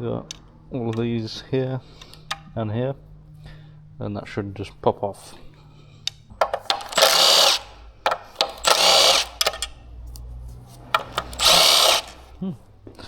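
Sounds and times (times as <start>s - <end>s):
cordless power driver spinning: 0.3s - 2.6s, 4.8s - 12.4s.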